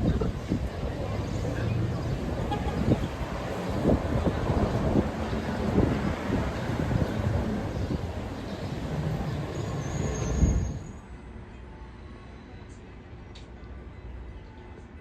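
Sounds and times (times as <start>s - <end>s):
train rumbling: 0.0s - 14.0s
high squeal of train: 5.2s - 14.6s.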